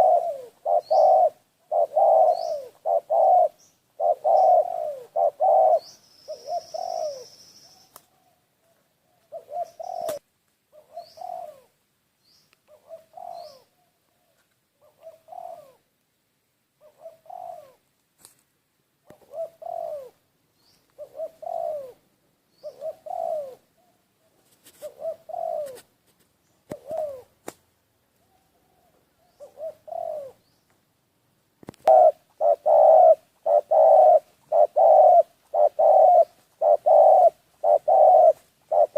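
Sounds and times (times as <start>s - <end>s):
small bird chirping: 0.0s - 8.2s, 10.8s - 11.6s, 12.2s - 15.8s, 19.2s - 24.4s
dove cooing: 0.0s - 11.8s, 12.7s - 15.9s, 16.8s - 17.8s, 19.1s - 20.2s, 21.0s - 25.9s, 26.7s - 27.4s, 28.2s - 30.5s, 31.7s - 38.9s.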